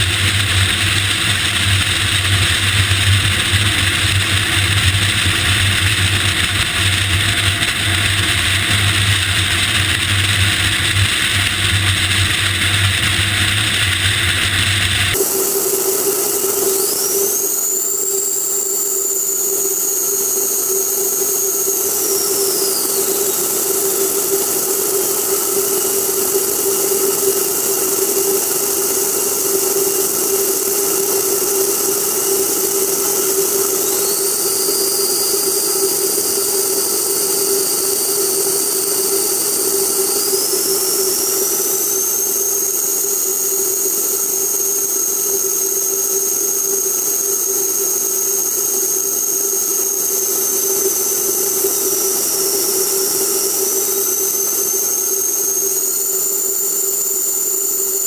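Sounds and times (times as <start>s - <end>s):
jet engines whining: 0.0s - 58.0s.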